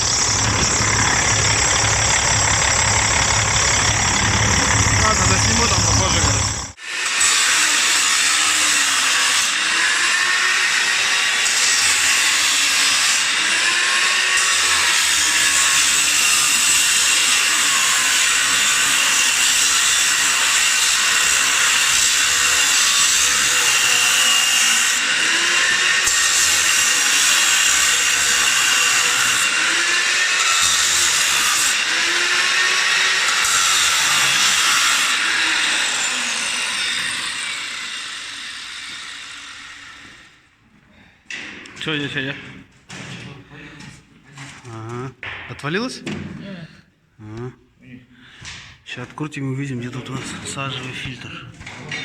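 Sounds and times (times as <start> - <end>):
angle grinder on metal: 0.0 - 40.5.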